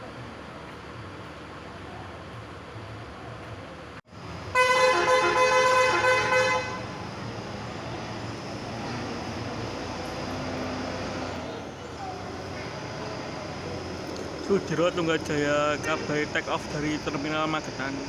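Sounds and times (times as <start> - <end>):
bus engine running: 0.0 - 18.0
bus horn blast: 4.5 - 7.0.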